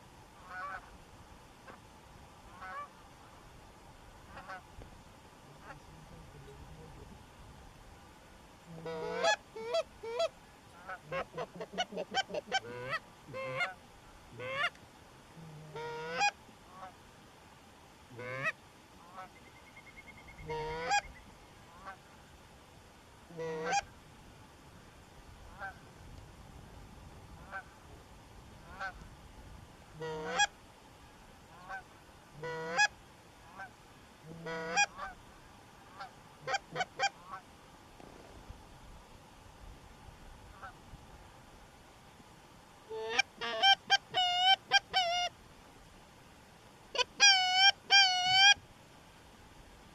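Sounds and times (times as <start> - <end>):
goose honks and clucks: 0.4 - 0.9, 2.5 - 3.4, 4.3 - 4.7, 5.5 - 7.0, 8.7 - 13.8, 14.4 - 14.8, 15.4 - 17.0, 18.1 - 21.1, 21.7 - 22.0, 23.3 - 23.9, 25.5 - 25.8, 27.4 - 27.8, 28.6 - 29.0, 29.9 - 30.5, 31.5 - 35.2, 35.9 - 37.4, 42.9 - 45.3, 46.9 - 48.6.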